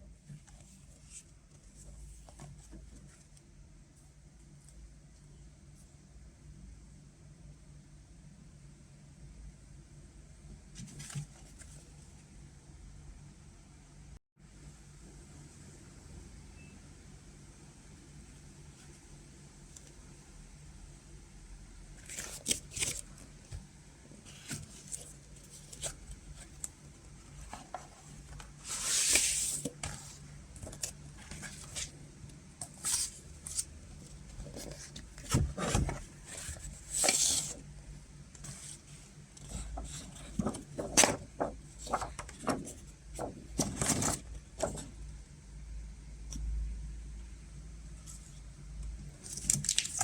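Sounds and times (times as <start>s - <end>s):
hands handling a vinyl record: 22.0s - 32.0s, 32.6s - 37.6s, 38.4s - 44.9s.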